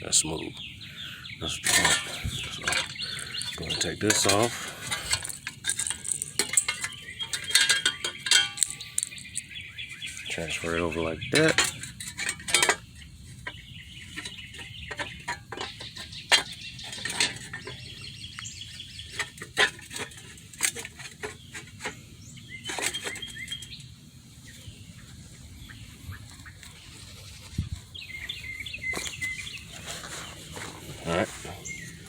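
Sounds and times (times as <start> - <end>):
birds chirping faintly: 0.0 - 32.0
metal clinks and taps: 5.1 - 9.5.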